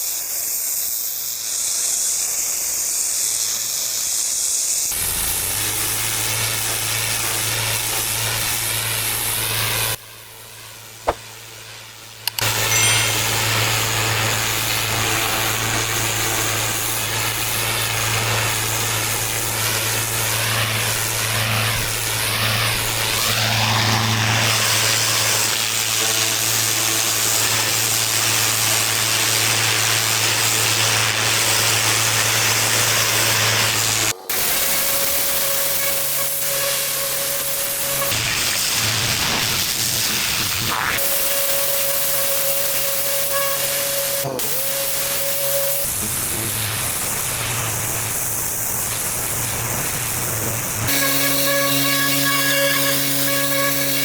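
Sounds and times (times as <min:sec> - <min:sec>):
high-pressure water jet spraying: 0:00.0 - 0:54.0
pressure washer engine hum: 0:04.8 - 0:54.0
steady hum with held tone: 0:04.9 - 0:28.8, 0:40.7 - 0:54.0.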